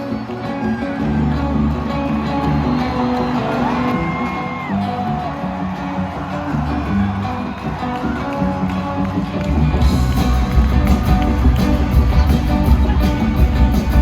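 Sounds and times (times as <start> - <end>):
strummed guitar: 0.0 - 14.0
audience whoop: 0.6 - 13.4
bass line: 6.4 - 14.0.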